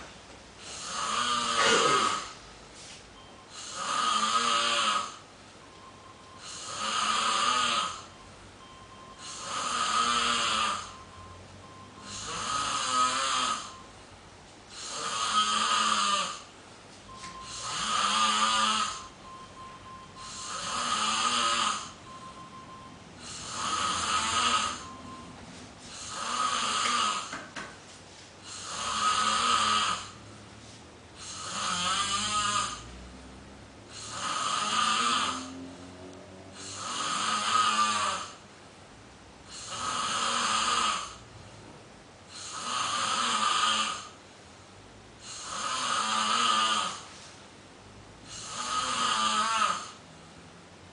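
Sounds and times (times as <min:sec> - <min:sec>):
rasping snore: 0:00.6 - 0:02.4, 0:03.5 - 0:05.2, 0:06.4 - 0:08.1, 0:09.2 - 0:11.0, 0:12.0 - 0:13.8, 0:14.7 - 0:16.5, 0:17.4 - 0:19.2, 0:20.2 - 0:22.1, 0:23.2 - 0:25.2, 0:25.8 - 0:27.3, 0:28.4 - 0:30.2, 0:31.2 - 0:33.0, 0:33.9 - 0:38.4, 0:39.5 - 0:41.3, 0:42.3 - 0:44.2, 0:45.2 - 0:47.1, 0:48.2 - 0:50.0
quiet breathing: 0:21.5 - 0:27.3.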